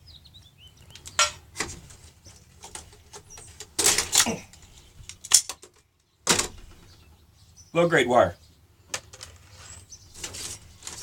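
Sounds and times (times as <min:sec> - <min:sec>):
wiring rustling: 0:00.8 - 0:07.0, 0:08.9 - 0:11.0.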